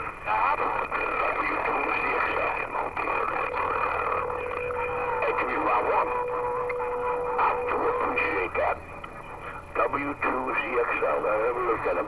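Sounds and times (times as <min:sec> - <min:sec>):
garbled radio stations and static: 0:00.0 - 0:12.0
lower whistle: 0:04.2 - 0:08.5.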